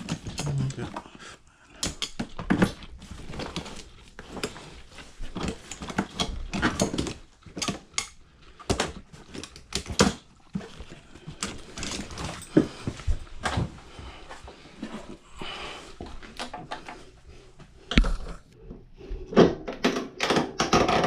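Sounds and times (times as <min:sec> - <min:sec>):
tools and parts clicking and knocking: 0:00.0 - 0:00.8, 0:01.8 - 0:13.6, 0:19.4 - 0:21.0.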